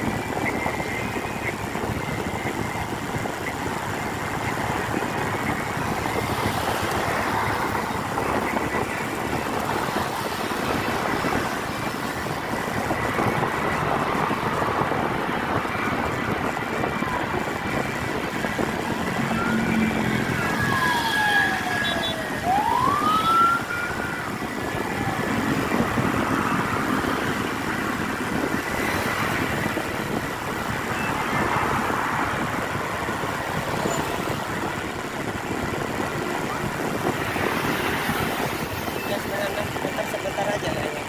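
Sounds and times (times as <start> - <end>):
siren wailing: 0.0 - 30.0
road traffic: 0.0 - 41.0.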